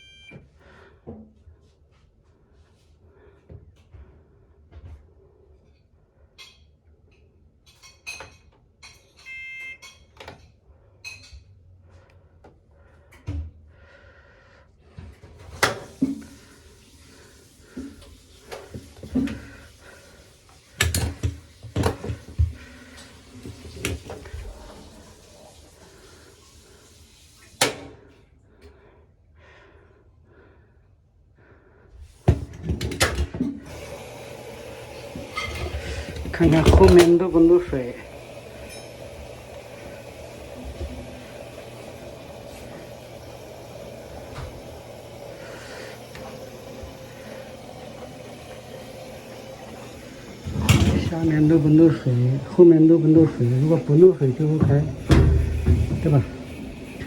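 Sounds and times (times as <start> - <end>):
short electronic beep: 9.2 - 9.9
washing machine clicks: 35.2 - 37.7, 50.7 - 57.0.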